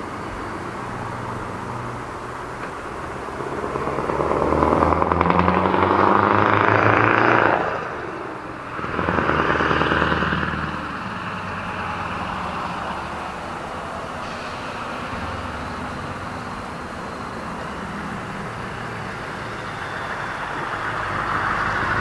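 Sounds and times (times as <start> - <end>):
diesel truck driving past: 0.0 - 22.0.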